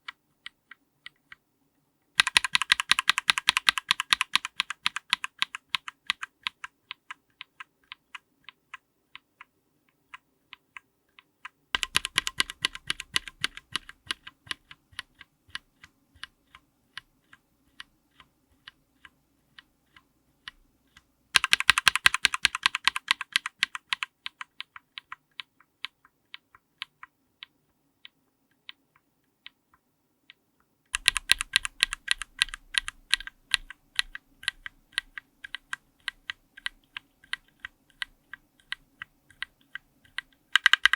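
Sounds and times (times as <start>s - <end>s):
mechanical keyboard keystrokes: 2.2s - 16.6s, 20.9s - 27.6s, 30.9s - 40.9s.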